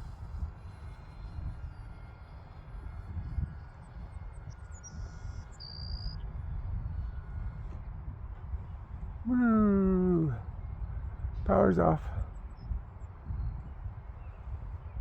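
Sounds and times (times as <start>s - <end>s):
model glider motor drone: 0.0s - 15.0s
wind rumble on microphone: 0.0s - 15.0s.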